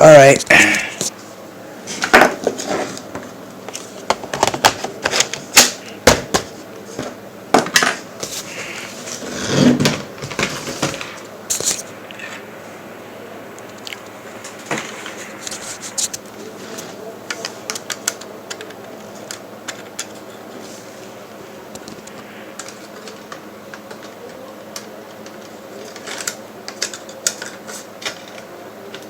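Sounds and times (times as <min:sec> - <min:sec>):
laptop parts clicking and knocking: 0:22.6 - 0:29.0.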